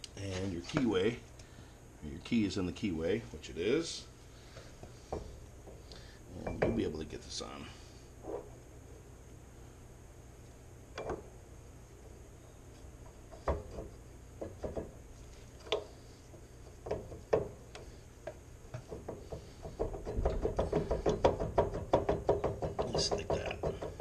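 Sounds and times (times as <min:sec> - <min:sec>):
metal knocks and clunks: 0:06.4 - 0:07.0, 0:18.7 - 0:24.0.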